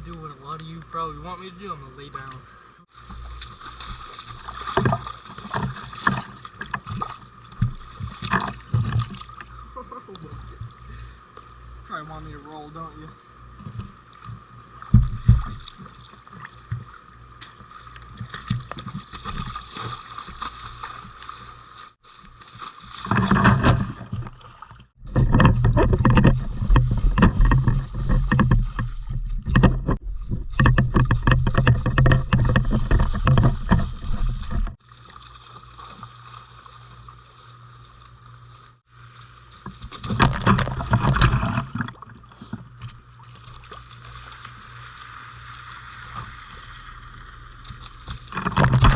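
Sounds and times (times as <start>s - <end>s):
low thumps on microphone: 14.9s - 15.7s, 25.0s - 34.8s
crackling rubbing on microphone: 25.1s - 34.8s.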